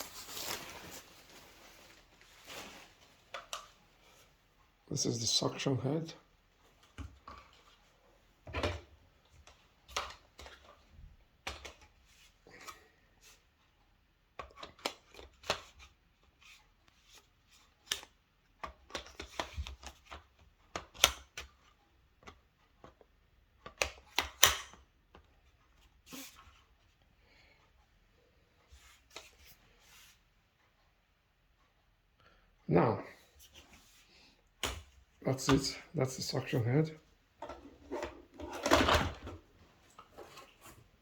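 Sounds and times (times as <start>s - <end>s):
plastic parts clicking and rattling: 37.4s - 40.9s.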